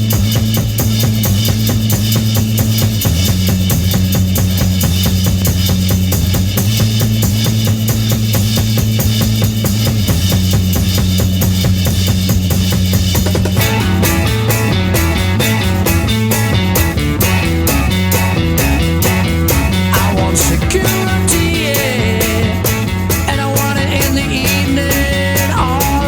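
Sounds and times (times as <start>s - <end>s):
low held bass notes: 0.0s - 26.0s
rock drum kit: 0.0s - 26.0s
pitched instrument: 13.4s - 25.5s.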